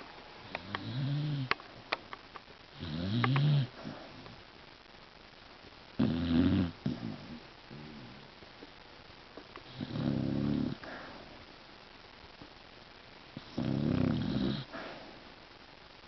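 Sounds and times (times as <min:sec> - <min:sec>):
dog snoring: 0:00.5 - 0:01.6, 0:02.7 - 0:04.0, 0:06.0 - 0:08.2, 0:09.7 - 0:11.1, 0:13.4 - 0:15.0.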